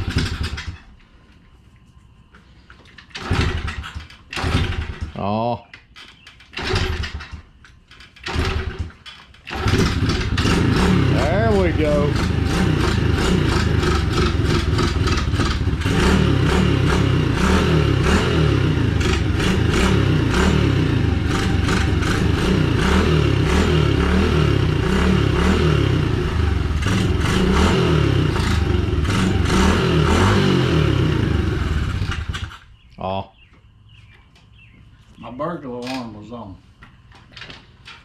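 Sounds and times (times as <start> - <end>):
motorbike engine revving: 0.0 - 0.8, 3.1 - 5.2, 6.5 - 7.5, 8.2 - 32.7.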